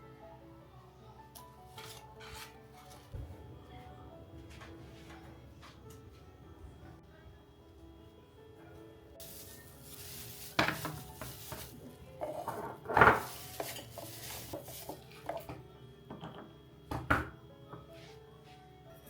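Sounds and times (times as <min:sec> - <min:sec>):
dishes and utensils clattering: 0:09.2 - 0:17.2.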